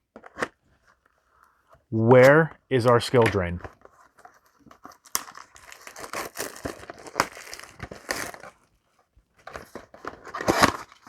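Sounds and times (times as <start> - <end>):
cardboard and foil wrapper rustling: 3.7 - 11.0.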